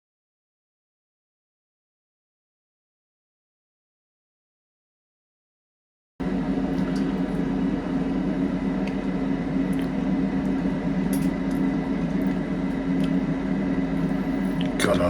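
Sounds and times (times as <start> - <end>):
mechanical hum with high whine: 6.2 - 15.0.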